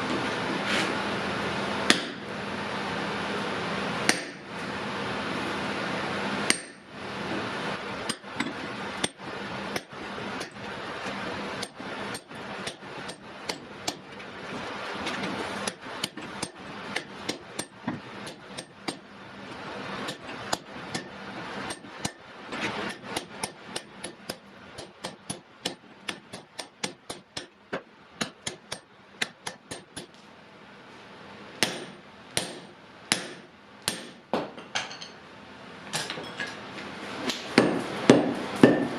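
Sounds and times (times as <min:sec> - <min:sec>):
hammer striking iron on anvil: 0:01.9 - 0:02.2, 0:04.1 - 0:04.4, 0:06.5 - 0:06.9, 0:08.0 - 0:10.6, 0:11.6 - 0:14.1, 0:15.6 - 0:19.1, 0:20.0 - 0:22.2, 0:22.8 - 0:30.2, 0:31.6 - 0:35.1, 0:37.3 - 0:38.9.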